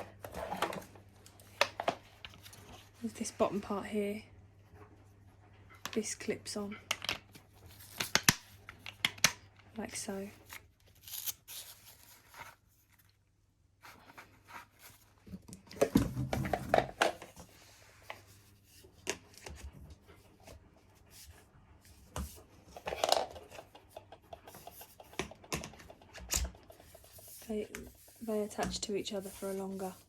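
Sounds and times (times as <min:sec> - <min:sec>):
plastic parts clicking and knocking: 0:08.0 - 0:09.5, 0:22.8 - 0:27.0.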